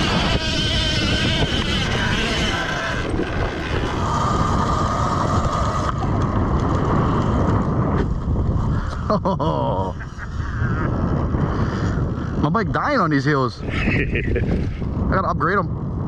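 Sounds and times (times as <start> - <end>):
electric motor whine: 0.0 - 8.3
wind rumble on microphone: 0.0 - 16.0.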